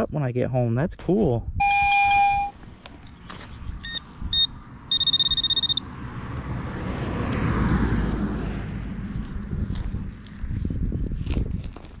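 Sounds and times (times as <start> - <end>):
metal detector beeps: 1.6 - 2.6, 3.8 - 5.9
passing vehicle rumble and hiss: 3.5 - 11.1.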